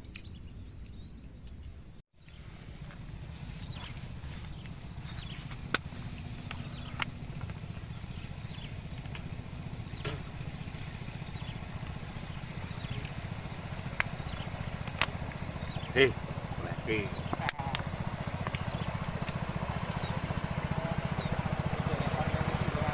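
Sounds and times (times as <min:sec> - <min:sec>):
sharp clicks: 0:13.8 - 0:15.8.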